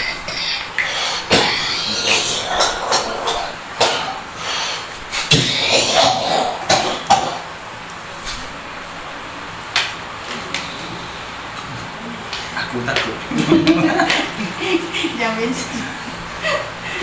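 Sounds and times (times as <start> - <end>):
person coughing hard: 1.3 - 4.2, 5.3 - 7.4.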